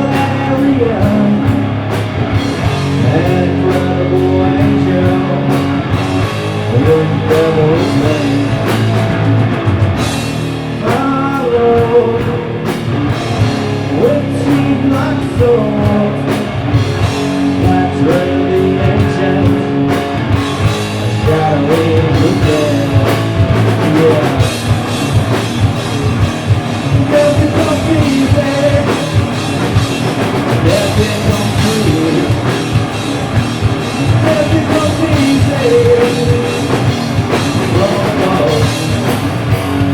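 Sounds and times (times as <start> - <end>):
person singing: 0.0 - 1.8, 2.8 - 5.8, 6.5 - 8.8, 10.8 - 12.8, 13.8 - 20.0, 21.0 - 24.6, 26.9 - 29.8, 30.5 - 33.0, 34.0 - 39.1
drum kit: 0.0 - 39.9
electric guitar: 0.0 - 39.9.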